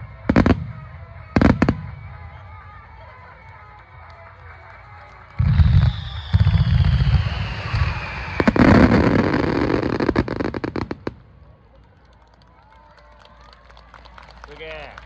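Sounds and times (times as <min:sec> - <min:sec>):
firework crackle and cracks: 0:00.1 - 0:14.6
firework whistle sliding down: 0:05.4 - 0:10.4
firework booms: 0:05.4 - 0:11.2.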